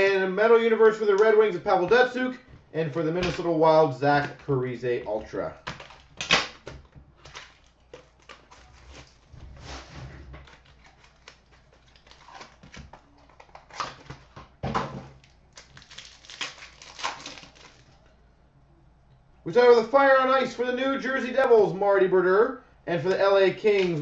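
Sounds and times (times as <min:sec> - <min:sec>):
cards shuffling: 0:05.8 - 0:14.4
wrappers crinkling and tearing: 0:07.2 - 0:14.3, 0:15.2 - 0:18.1.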